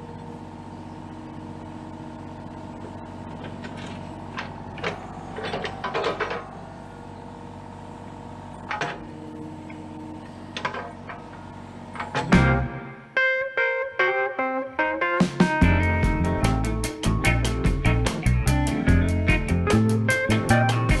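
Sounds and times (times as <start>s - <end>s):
excavator diesel engine running: 2.0s - 12.7s.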